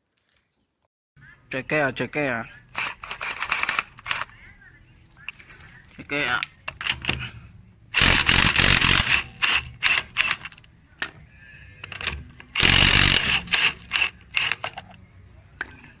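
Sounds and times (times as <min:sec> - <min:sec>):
impact wrench hammering: 0:08.0 - 0:11.2, 0:11.8 - 0:14.8.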